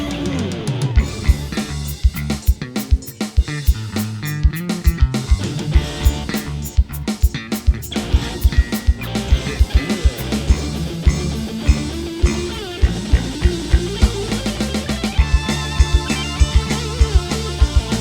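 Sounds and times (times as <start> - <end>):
bass: 0.0 - 18.0
drum beats: 0.0 - 18.0
sliding lead melody: 7.9 - 18.0.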